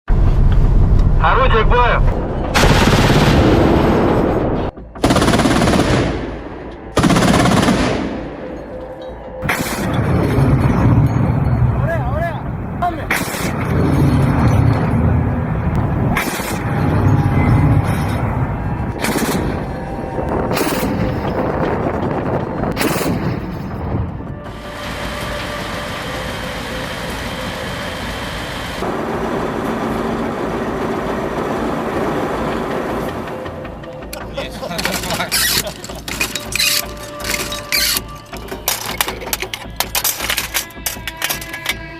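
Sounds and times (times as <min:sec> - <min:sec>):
autocannon automatic fire: 0:02.5 - 0:08.2, 0:09.4 - 0:11.1, 0:15.8 - 0:18.2, 0:18.9 - 0:19.7
engine running: 0:09.4 - 0:34.3.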